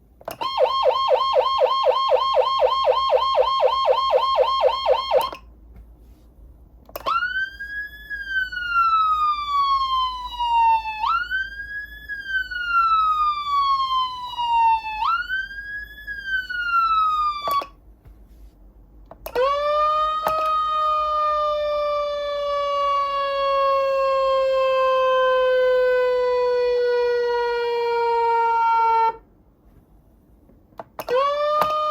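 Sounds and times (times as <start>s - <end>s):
electronic siren tones: 0.3s - 5.4s, 7.0s - 17.8s.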